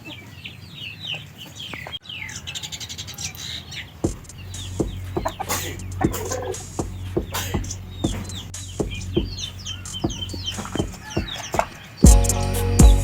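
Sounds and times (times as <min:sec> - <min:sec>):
chickens clucking: 0:00.0 - 0:08.5.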